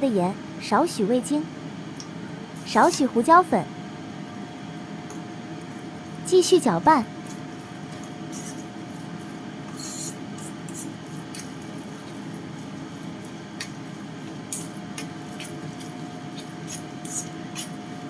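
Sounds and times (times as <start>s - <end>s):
utensil stirring sticky paste: 7.2s - 18.0s.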